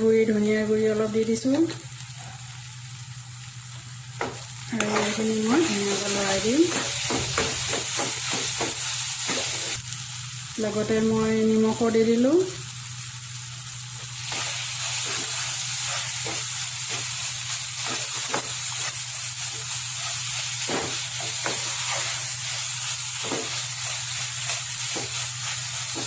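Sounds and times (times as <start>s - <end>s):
paste sizzling in hot oil: 12.2s - 26.0s.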